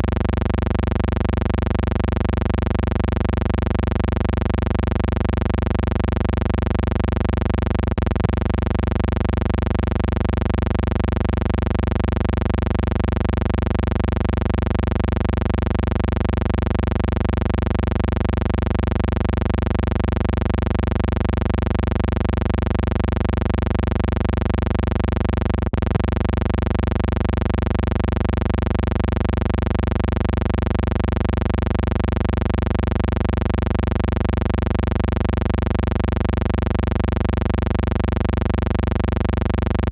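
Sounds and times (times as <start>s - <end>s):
steady hum: 0.0s - 39.9s.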